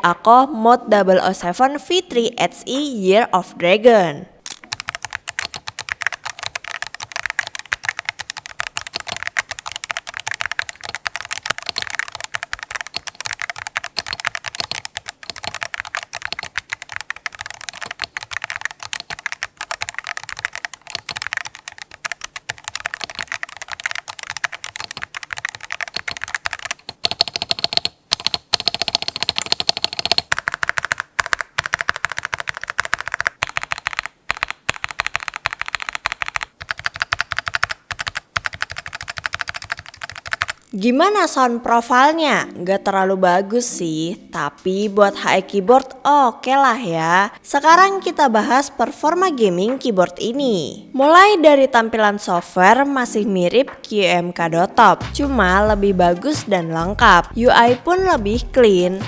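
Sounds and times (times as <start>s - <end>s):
fast keyboard typing clacks: 4.6s - 40.6s, 47.7s - 50.1s, 54.6s - 59.0s.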